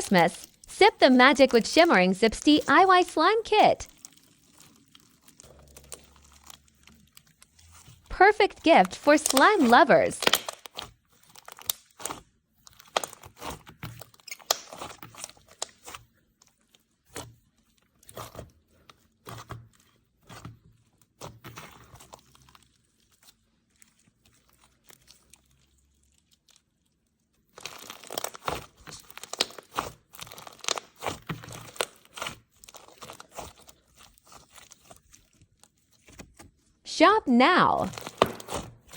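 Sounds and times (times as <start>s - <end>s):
slime crackling and popping: 3.8s - 8.0s, 9.2s - 16.0s, 27.4s - 35.3s.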